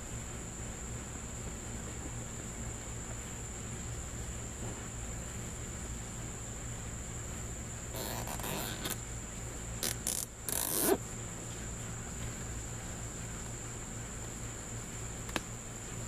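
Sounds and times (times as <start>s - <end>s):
zip ties being pulled tight: 8.0s - 9.0s, 9.8s - 11.0s.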